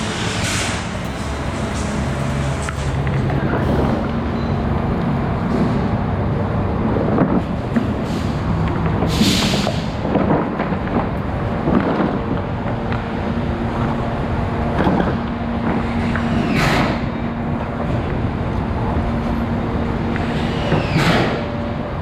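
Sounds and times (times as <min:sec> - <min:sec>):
motor humming: 0:00.0 - 0:06.3.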